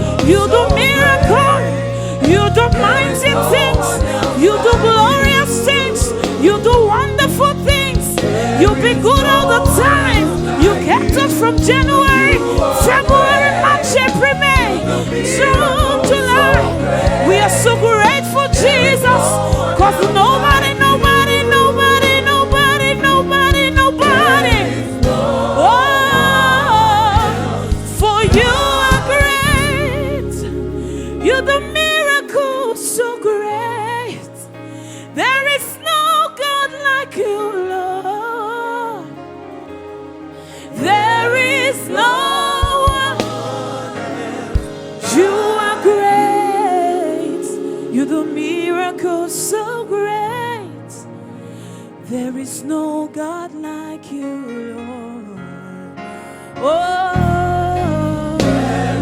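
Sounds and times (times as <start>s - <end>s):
drums: 0.0s - 30.5s, 42.4s - 49.6s, 58.4s - 59.0s
bass guitar: 0.0s - 32.0s, 57.2s - 59.0s
band playing: 0.0s - 34.2s, 40.8s - 51.7s, 58.3s - 59.0s
voices singing gospel: 0.0s - 39.2s, 40.5s - 54.4s, 56.6s - 59.0s
drum hits: 27.2s - 29.9s, 42.6s - 50.0s, 58.4s - 59.0s.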